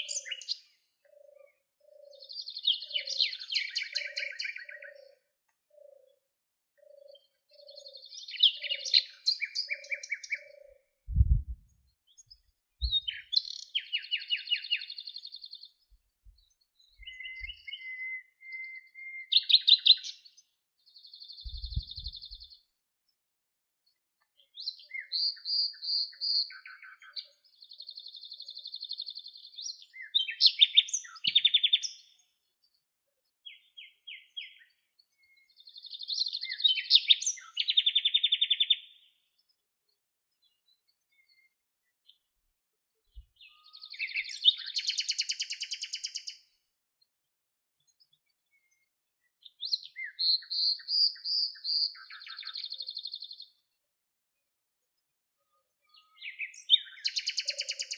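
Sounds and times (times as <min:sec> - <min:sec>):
songbirds chirping and trilling: 0:00.0 - 0:23.2, 0:23.8 - 0:57.9
low thumps: 0:11.1 - 0:11.6
soft low bird notes: 0:11.1 - 0:11.8.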